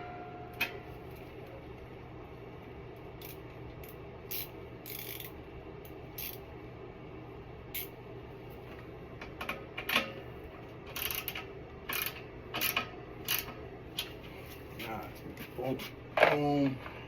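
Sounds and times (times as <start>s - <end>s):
socket ratchet clicking: 4.3s - 5.3s, 10.9s - 13.5s.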